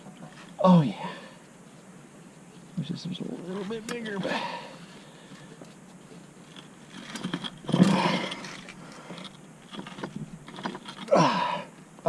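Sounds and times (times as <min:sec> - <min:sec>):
handling and rubbing noise: 0:00.0 - 0:11.1
man grunting: 0:00.6 - 0:01.3, 0:11.1 - 0:11.7.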